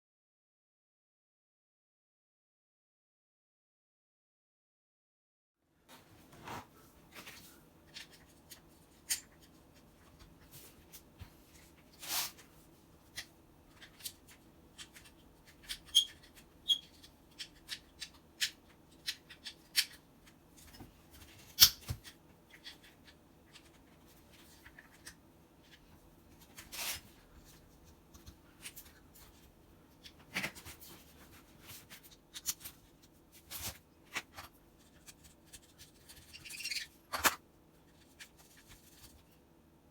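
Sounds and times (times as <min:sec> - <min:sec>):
faint steady hum: 0:05.7 - 0:39.9.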